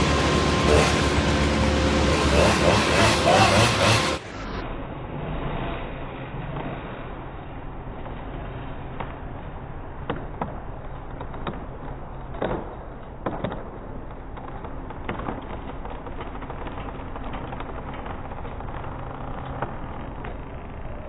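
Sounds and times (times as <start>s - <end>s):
low engine hum: 0.0s - 13.0s, 15.6s - 21.0s
sharp cracks and knocks: 10.0s - 21.0s.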